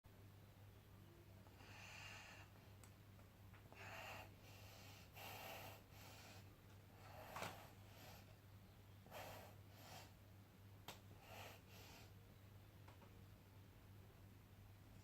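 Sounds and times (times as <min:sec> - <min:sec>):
soft breathing: 0:01.4 - 0:02.8, 0:03.6 - 0:10.3, 0:11.0 - 0:12.4.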